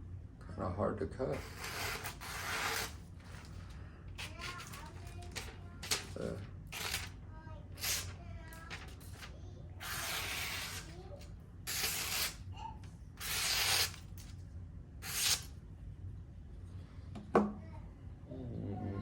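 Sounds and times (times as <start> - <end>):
knife slicing paper: 1.3 - 3.6, 4.2 - 7.2, 7.8 - 12.5, 13.2 - 14.4, 15.0 - 15.5.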